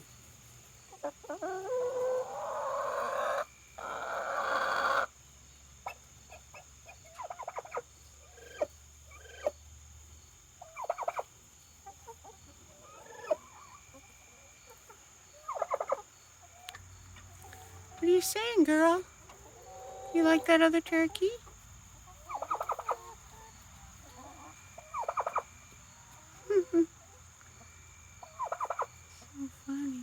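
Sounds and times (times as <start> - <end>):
turkey clucking: 0.9 - 5.1, 5.8 - 9.5, 10.6 - 18.0, 22.1 - 27.2, 28.2 - 29.0
turkey hen hissing calls: 1.3 - 5.1, 22.2 - 23.2, 28.2 - 29.2.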